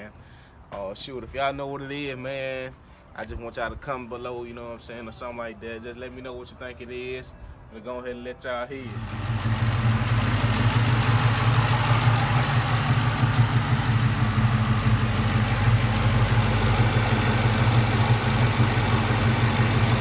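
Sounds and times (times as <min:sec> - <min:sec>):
car engine idling: 0:08.8 - 0:20.0
light engine ticking: 0:08.8 - 0:20.0.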